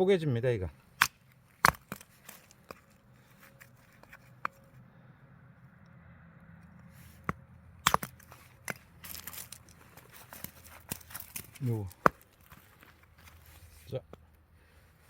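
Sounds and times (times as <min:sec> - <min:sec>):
axe splitting firewood: 0:00.9 - 0:04.7, 0:07.1 - 0:13.9.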